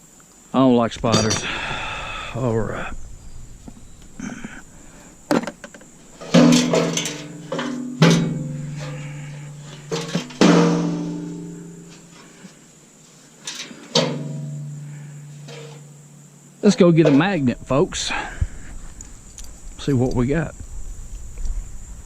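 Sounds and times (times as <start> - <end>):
sheet metal clanging: 1.0 - 1.9, 3.6 - 12.4, 13.4 - 18.7.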